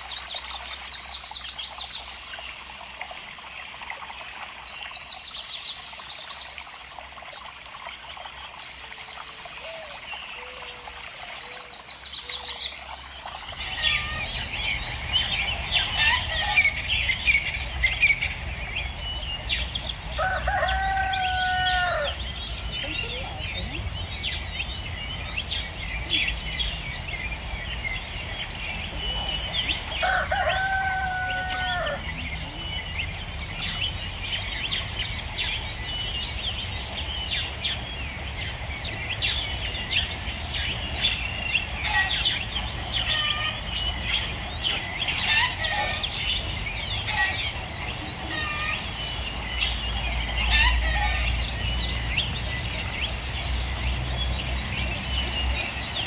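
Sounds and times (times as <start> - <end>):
poultry chirps and cheeps: 13.5 - 24.0, 40.8 - 53.6
long crow-like call: 20.2 - 22.2, 30.0 - 32.0.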